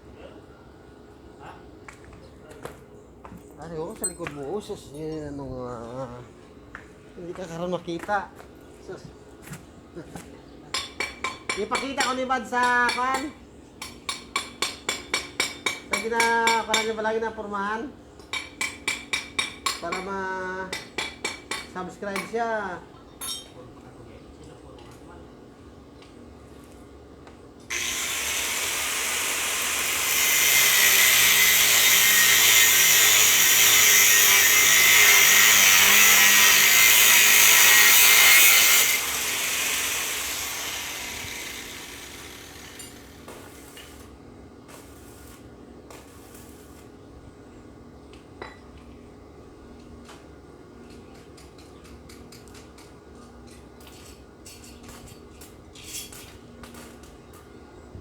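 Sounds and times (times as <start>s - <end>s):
angle grinder grinding metal: 27.7s - 43.4s.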